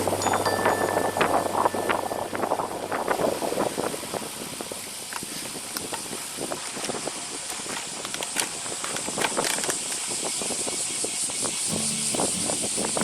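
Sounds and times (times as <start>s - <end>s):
wind and tyre noise: 0.0s - 13.0s
small clicks and crackles: 6.7s - 10.0s.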